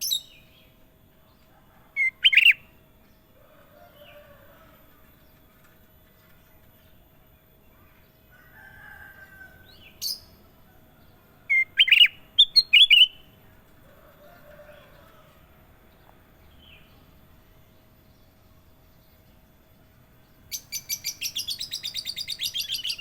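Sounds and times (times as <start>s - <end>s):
bird whistling song: 2.0s - 2.6s, 11.5s - 13.2s, 20.5s - 23.0s.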